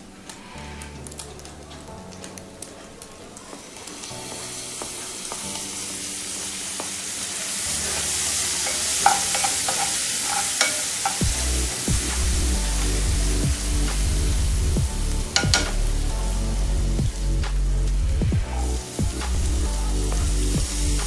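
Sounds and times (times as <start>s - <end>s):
food sizzling in hot oil: 2.4s - 21.0s
utensil clicking against pan: 8.0s - 11.3s, 15.3s - 15.9s.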